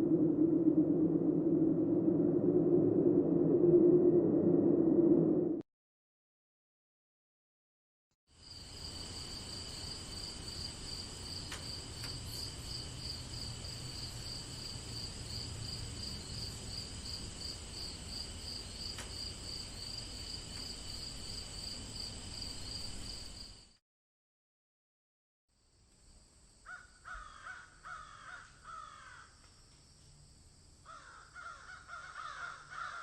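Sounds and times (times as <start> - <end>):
low rumble: 0.0 - 5.6
insects chirping: 8.3 - 23.8, 25.6 - 33.0.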